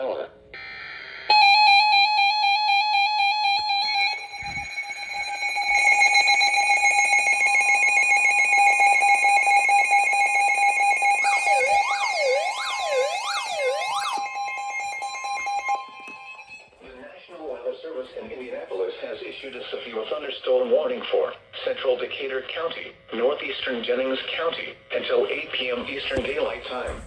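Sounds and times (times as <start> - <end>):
buzzy alarm tone: 0.6 - 16.8
higher alarm tone: 1.3 - 16.8
wailing tone sweeping: 3.0 - 16.6.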